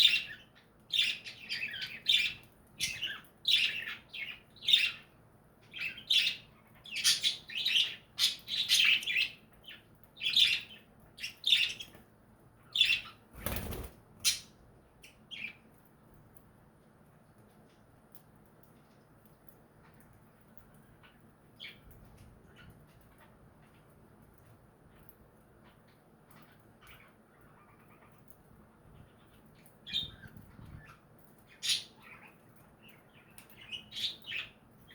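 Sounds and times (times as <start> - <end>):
budgerigars chirping: 0.0 - 5.1, 5.7 - 12.0, 12.6 - 15.6, 29.9 - 32.4
faint bird chatter: 0.0 - 16.2, 18.6 - 34.9
wings fluttering: 13.2 - 14.4
budgerigars squawking and chirping: 31.6 - 32.4.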